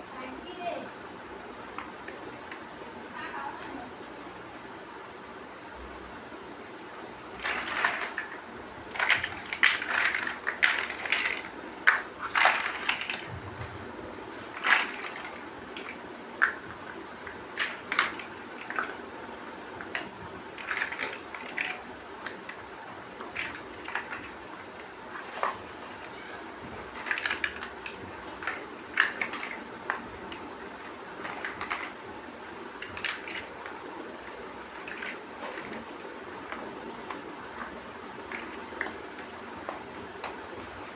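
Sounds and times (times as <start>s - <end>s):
plastic bricks clicking and rattling: 7.3s - 13.3s, 14.4s - 26.1s, 26.8s - 38.9s.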